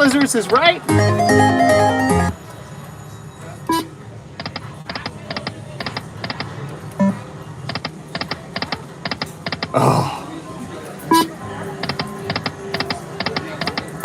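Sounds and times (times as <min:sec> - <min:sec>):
slot machine electronic ticks: 0:00.0 - 0:02.4, 0:03.7 - 0:09.8, 0:11.1 - 0:14.0
brief tone blips: 0:11.1 - 0:11.4.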